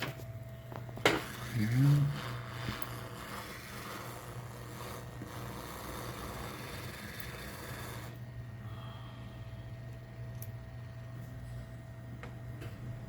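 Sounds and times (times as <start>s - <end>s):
low steady hum: 0.0s - 13.0s
hot air hissing: 1.0s - 9.7s.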